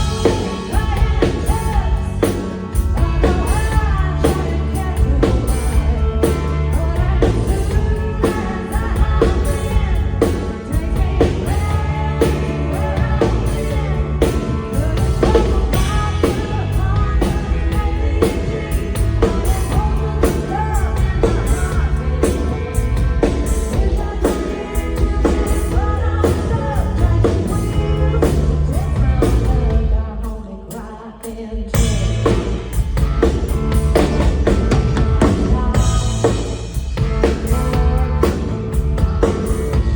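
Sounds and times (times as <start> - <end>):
female lead vocal: 0.0 - 39.9
pop-country band playing live: 0.0 - 39.9.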